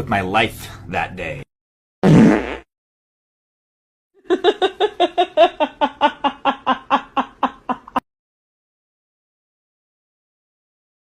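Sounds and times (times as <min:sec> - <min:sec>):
person laughing in pulses: 0:04.2 - 0:08.0.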